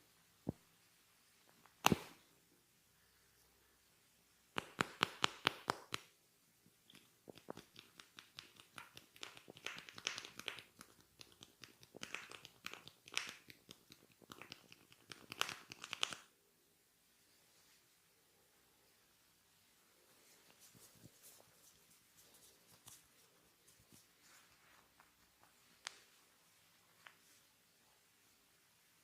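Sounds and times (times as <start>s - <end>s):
hair crackling and scratching: 6.8s - 16.3s.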